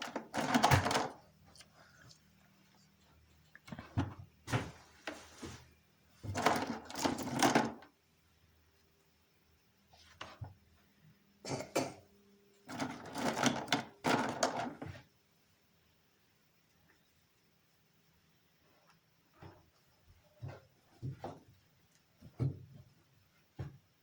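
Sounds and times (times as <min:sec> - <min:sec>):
toys and packaging rustling: 0:00.0 - 0:02.2, 0:03.7 - 0:07.9, 0:12.7 - 0:14.9.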